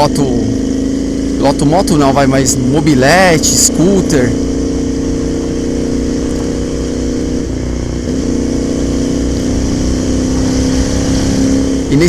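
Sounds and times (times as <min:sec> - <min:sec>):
motorcycle engine cruising: 0:00.0 - 0:12.0.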